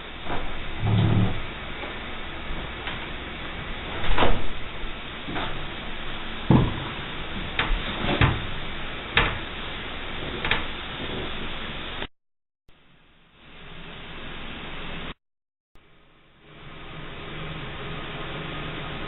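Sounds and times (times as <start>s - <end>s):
steady hiss: 0.0s - 12.1s
knocks and bumps: 6.5s - 8.6s.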